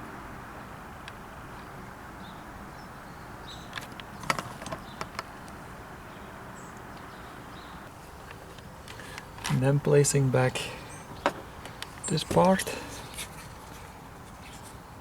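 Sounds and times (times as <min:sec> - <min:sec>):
car parts clicking and knocking: 0:03.7 - 0:05.6, 0:11.1 - 0:13.8
low background hiss: 0:05.3 - 0:15.0.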